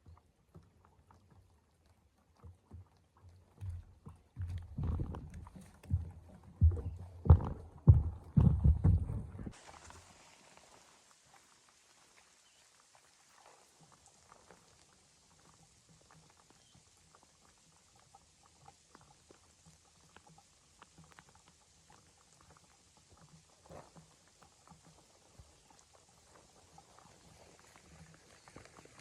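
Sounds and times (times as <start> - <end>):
faint ticks and crackles: 0.0 - 29.0.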